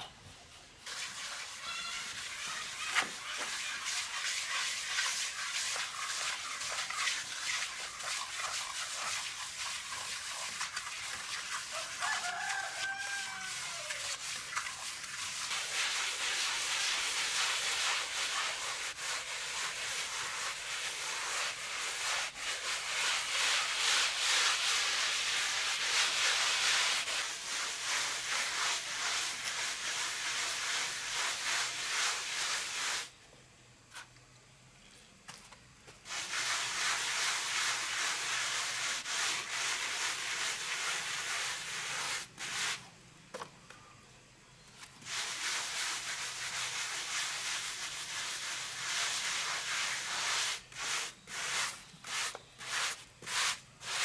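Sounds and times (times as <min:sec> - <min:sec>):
rooster crowing: 0:11.7 - 0:14.1.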